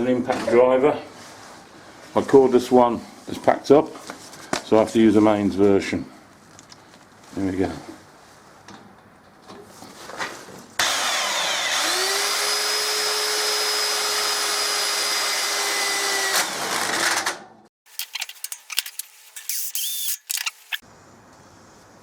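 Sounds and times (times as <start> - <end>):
impact driver bursts and clicks: 17.9 - 20.8
impact driver motor whine: 17.9 - 20.8.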